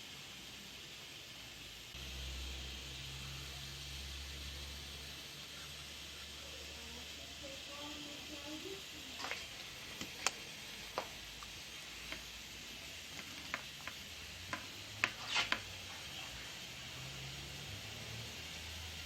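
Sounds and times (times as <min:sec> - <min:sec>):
tools clicking and tapping: 0:13.1 - 0:15.7
short hiss: 0:13.4 - 0:16.5.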